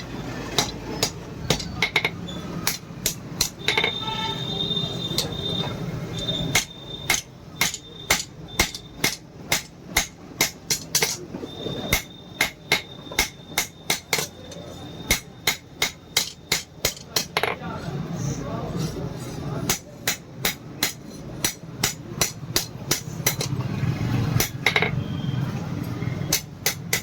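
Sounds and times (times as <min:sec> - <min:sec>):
hammer striking metal on anvil: 0:00.5 - 0:04.0, 0:06.5 - 0:11.2, 0:11.9 - 0:17.6, 0:19.7 - 0:23.6, 0:26.3 - 0:27.0.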